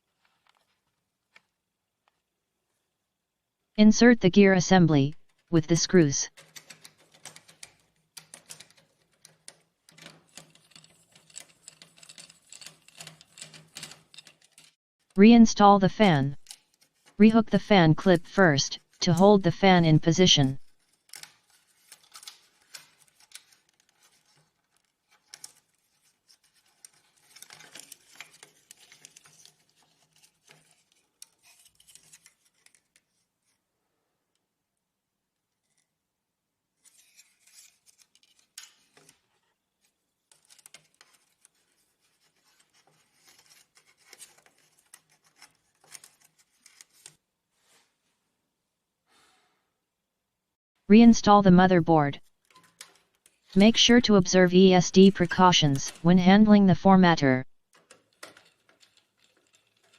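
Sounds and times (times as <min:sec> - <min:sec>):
plastic parts clicking and scraping: 0:06.4 - 0:14.8, 0:20.8 - 0:33.2, 0:36.8 - 0:47.2, 0:57.7 - 0:59.9.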